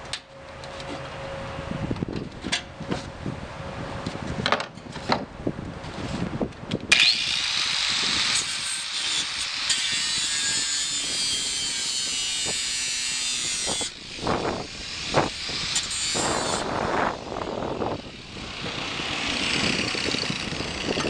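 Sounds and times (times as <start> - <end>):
wind buffeting microphone: 1.4 - 21.0
angle grinder cutting steel: 6.9 - 17.4, 18.0 - 21.0.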